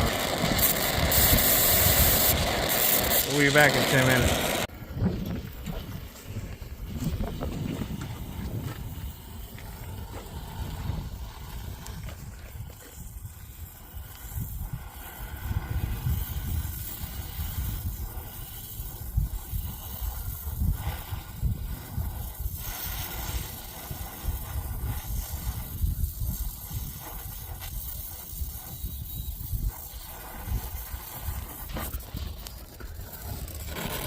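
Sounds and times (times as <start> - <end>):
torch flame hissing: 0.0 - 4.8, 6.8 - 34.0.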